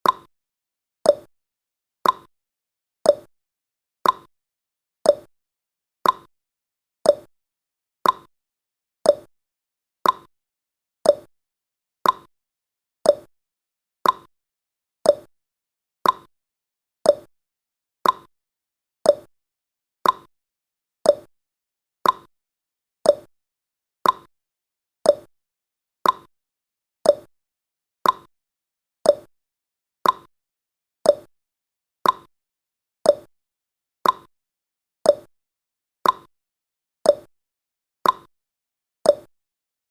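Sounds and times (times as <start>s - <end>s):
timer ticking: 0.0s - 0.3s, 1.1s - 1.3s, 2.0s - 2.3s, 3.1s - 3.3s, 4.0s - 4.3s, 5.1s - 5.3s, 6.0s - 6.3s, 7.1s - 7.3s, 8.0s - 8.3s, 9.0s - 9.3s, 10.0s - 10.3s, 11.0s - 11.3s, 12.0s - 12.3s, 13.0s - 13.3s, 14.0s - 14.3s, 15.0s - 15.3s, 16.0s - 16.3s, 17.0s - 17.3s, 18.0s - 18.3s, 19.0s - 19.3s, 20.0s - 20.3s, 21.0s - 21.3s, 22.0s - 22.3s, 23.0s - 23.3s, 24.0s - 24.3s, 25.0s - 25.3s, 26.0s - 26.3s, 27.0s - 27.3s, 28.0s - 28.3s, 29.0s - 29.3s, 30.0s - 30.3s, 31.0s - 31.3s, 32.0s - 32.3s, 33.0s - 33.3s, 34.0s - 34.3s, 35.1s - 35.3s, 36.0s - 36.3s, 37.1s - 37.3s, 38.0s - 38.3s, 39.1s - 39.3s.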